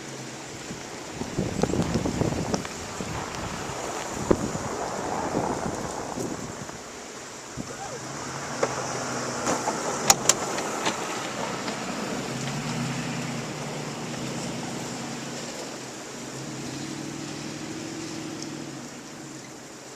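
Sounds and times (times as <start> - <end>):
pickup truck engine running: 0.0 - 19.9.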